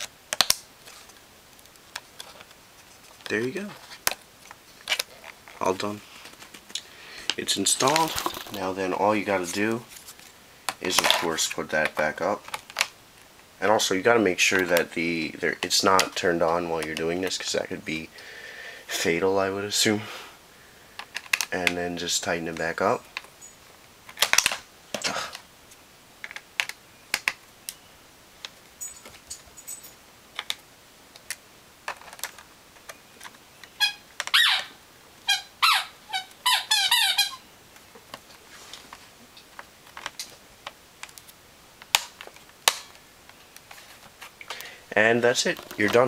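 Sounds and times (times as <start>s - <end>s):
squeaky screwdriver scraping: 33.8s - 34.7s, 35.3s - 37.4s.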